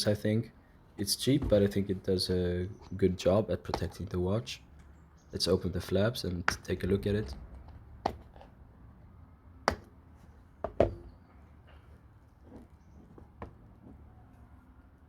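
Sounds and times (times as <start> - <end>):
taps and knocks on a box: 8.0 - 8.4, 9.7 - 9.9, 10.6 - 11.1.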